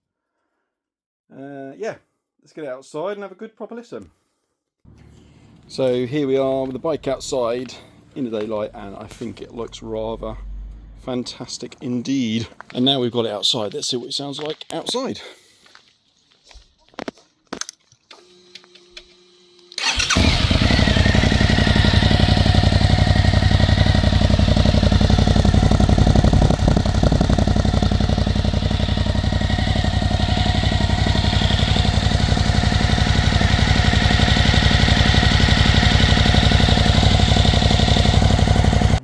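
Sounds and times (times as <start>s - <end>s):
motorcycle engine starting and idling: 19.8s - 39.0s.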